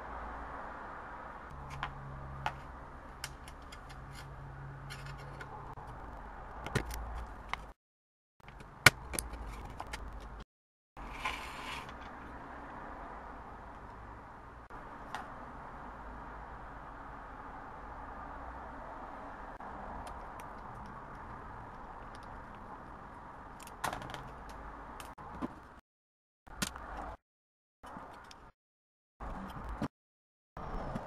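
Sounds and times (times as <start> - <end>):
plastic parts clicking and scraping: 2.5 - 7.8, 8.4 - 10.4.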